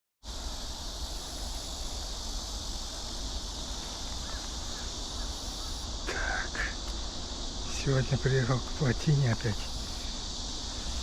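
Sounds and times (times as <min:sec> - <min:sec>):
high-pitched insect chorus: 0:00.2 - 0:11.0
faint chirps: 0:03.7 - 0:11.0.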